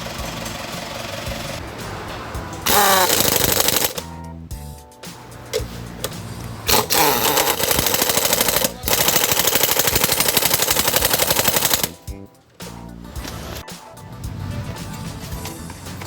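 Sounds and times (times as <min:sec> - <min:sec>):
rapid mechanical rattle: 0:00.0 - 0:04.1, 0:06.0 - 0:12.0.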